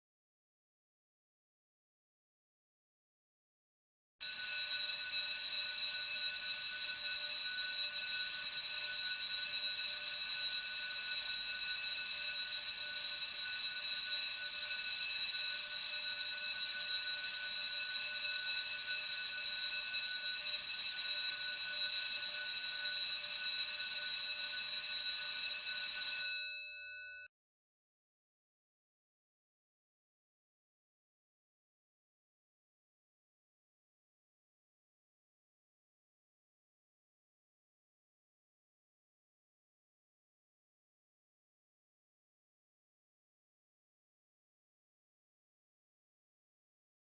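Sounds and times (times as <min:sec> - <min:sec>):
school bell ringing: 0:25.3 - 0:26.6.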